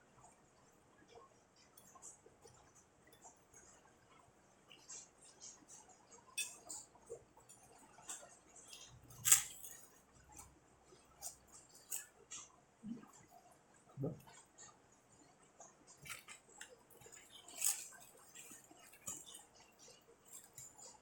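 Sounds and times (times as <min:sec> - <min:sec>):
chewing food: 0:00.0 - 0:21.0.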